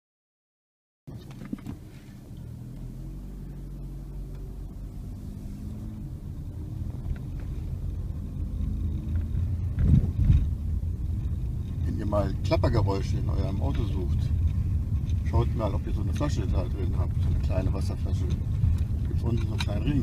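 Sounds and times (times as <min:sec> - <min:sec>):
car engine and road hum: 0:01.1 - 0:20.0.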